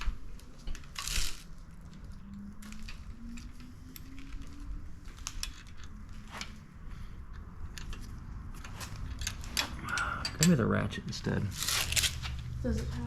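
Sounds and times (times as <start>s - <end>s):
wrench clicking and scraping on metal: 7.3s - 10.8s.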